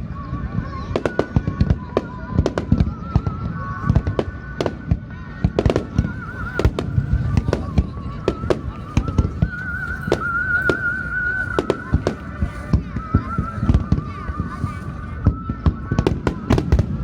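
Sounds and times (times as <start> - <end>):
fireworks bursting: 0.0 - 17.0
wavering high whistling: 5.7 - 16.9.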